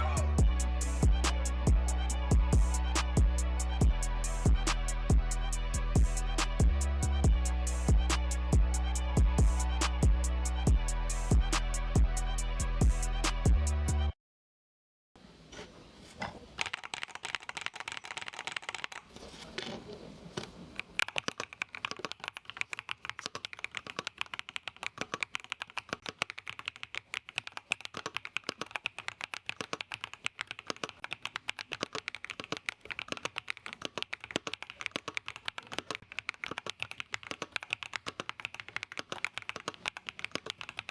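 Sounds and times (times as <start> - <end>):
mechanical keyboard typing: 16.6 - 19.8, 20.4 - 40.9.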